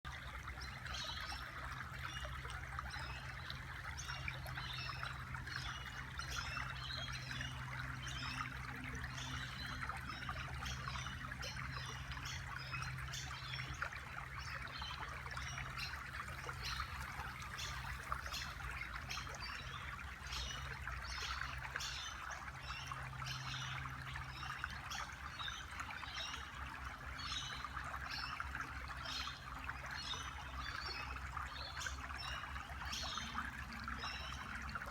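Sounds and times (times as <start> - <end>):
water trickling in a stream: 0.0 - 34.9
low steady hum: 2.8 - 25.3.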